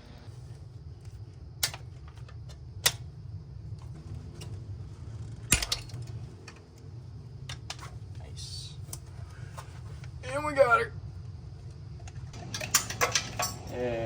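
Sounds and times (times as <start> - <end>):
steady low hum: 0.0 - 14.0
metal tools clinking and clanking: 12.0 - 14.0.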